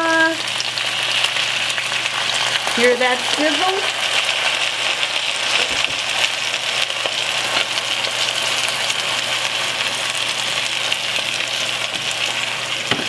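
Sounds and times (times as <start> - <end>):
vegetables sizzling in a pan: 0.0 - 13.0.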